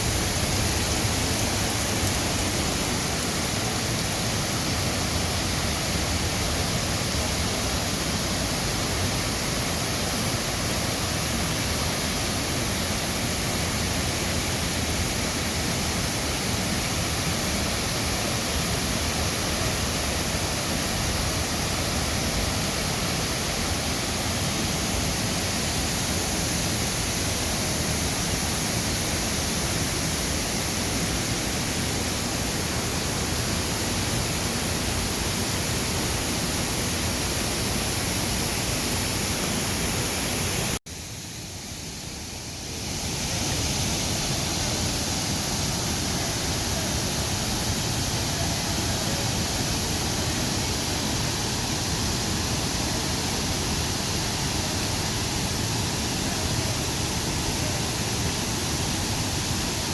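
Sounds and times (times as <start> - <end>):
waterfall roaring: 0.0 - 59.9.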